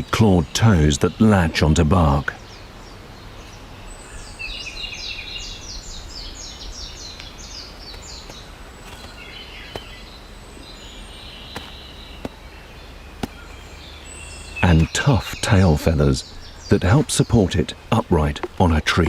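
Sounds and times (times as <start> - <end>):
soft chattering bird calls: 0.0 - 19.0
sharp single taps: 11.5 - 12.4.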